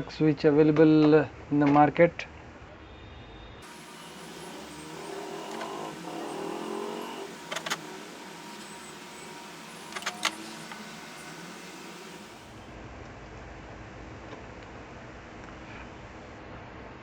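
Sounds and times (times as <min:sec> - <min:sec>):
sharp clicks: 0:03.6 - 0:12.5
soft whirring: 0:03.6 - 0:12.8.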